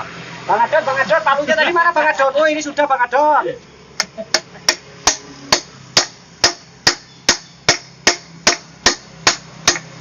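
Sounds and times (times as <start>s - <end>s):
hammer striking metal: 4.0s - 9.9s.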